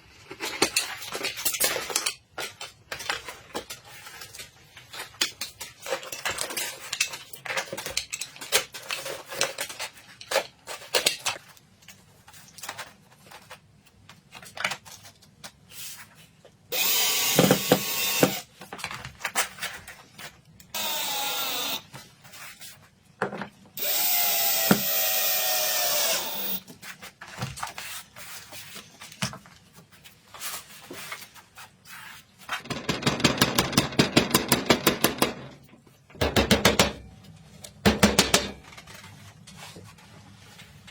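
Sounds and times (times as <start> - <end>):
electric drill motor whine: 16.7 - 18.4, 20.8 - 21.9, 23.8 - 26.6.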